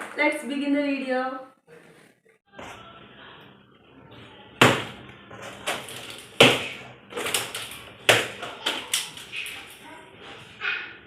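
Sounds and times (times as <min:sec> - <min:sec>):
knocks and bangs on packaging: 0:04.6 - 0:09.2.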